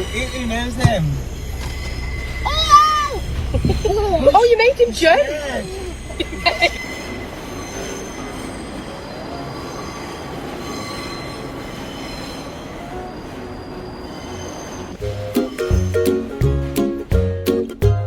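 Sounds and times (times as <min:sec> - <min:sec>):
mechanical rumble and hiss: 0:00.0 - 0:09.5
high-pitched squealing tones: 0:00.0 - 0:16.4
plucked ukulele-like music: 0:15.0 - 0:18.0.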